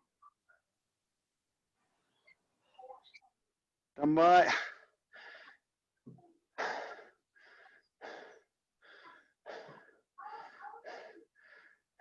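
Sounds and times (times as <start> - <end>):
person panting hard: 6.6 - 11.9.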